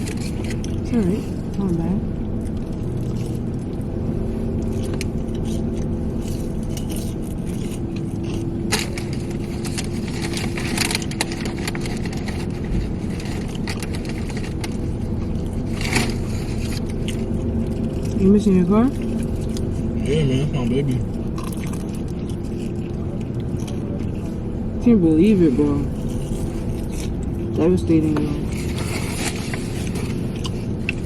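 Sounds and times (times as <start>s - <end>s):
truck engine running: 0.0s - 31.0s
food packaging crinkling: 4.7s - 18.2s, 28.4s - 31.0s.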